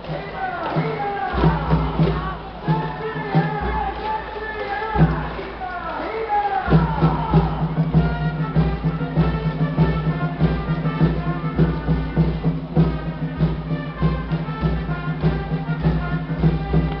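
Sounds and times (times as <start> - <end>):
heavy drum beat: 0.0 - 17.0
brass-like melody: 6.7 - 17.0.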